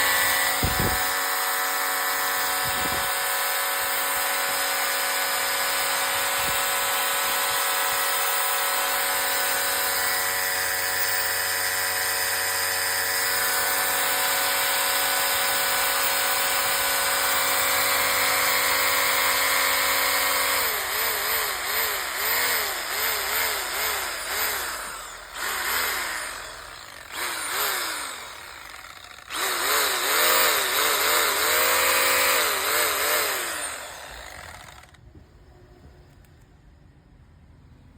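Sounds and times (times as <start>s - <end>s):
electric hammer drill running: 0.0s - 35.0s.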